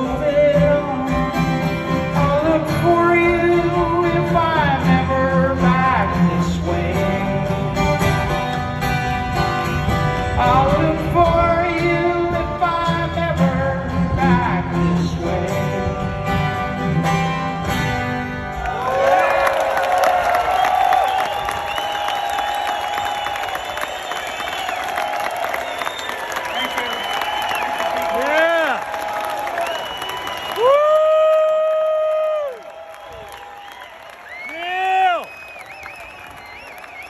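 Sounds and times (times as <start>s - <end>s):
strummed guitar: 0.0s - 18.6s
acoustic country-folk music: 0.0s - 18.9s.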